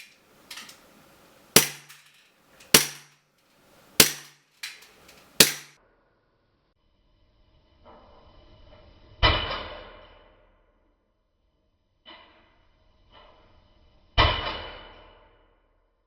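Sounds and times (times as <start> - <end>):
handling noises: 0.0 - 5.7
airsoft pistol shots: 1.6 - 2.1, 2.7 - 3.1, 4.0 - 5.7.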